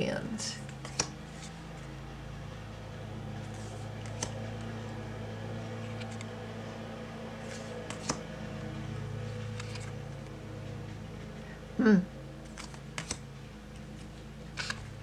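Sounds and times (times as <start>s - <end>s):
steady low hum: 0.0s - 15.0s
cards sliding on cards: 0.6s - 1.9s, 3.4s - 4.8s, 5.8s - 6.3s, 7.4s - 8.3s, 9.4s - 10.0s, 12.4s - 13.2s, 13.8s - 15.0s.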